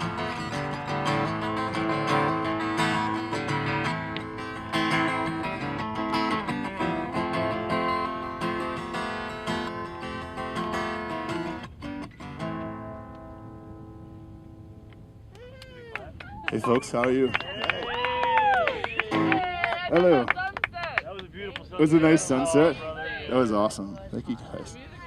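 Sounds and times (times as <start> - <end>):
guitar strumming: 0.0 - 15.3, 19.1 - 19.6.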